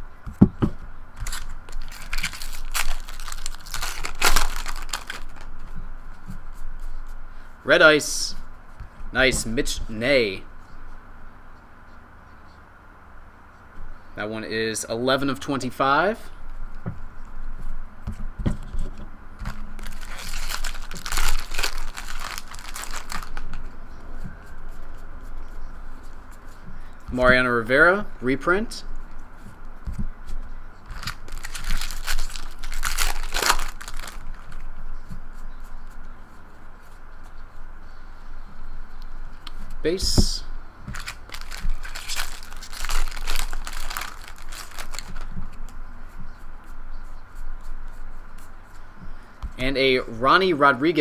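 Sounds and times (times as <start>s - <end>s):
foil wrapper crinkling: 1.2s - 5.5s, 19.4s - 23.7s, 30.9s - 34.7s, 40.9s - 45.4s.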